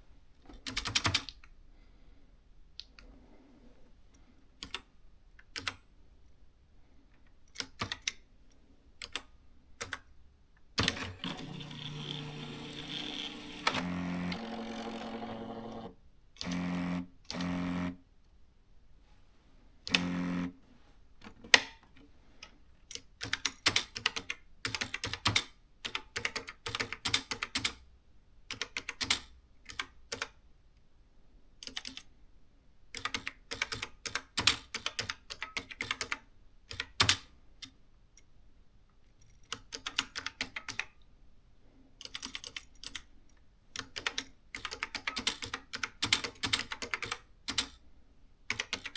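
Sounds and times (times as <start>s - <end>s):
typewriter motor whirs: 10.8s - 18.0s, 19.9s - 20.6s
rapid typewriter key clicks: 43.8s - 47.8s, 48.5s - 48.9s.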